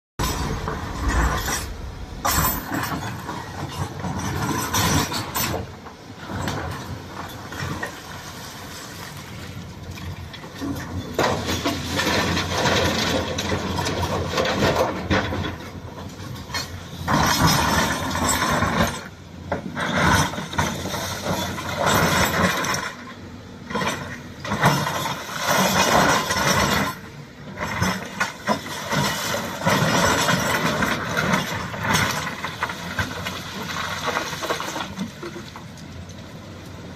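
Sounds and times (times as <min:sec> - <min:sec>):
mechanical clanking and rattling: 0:00.2 - 0:07.9
excavator engine running: 0:00.2 - 0:10.6.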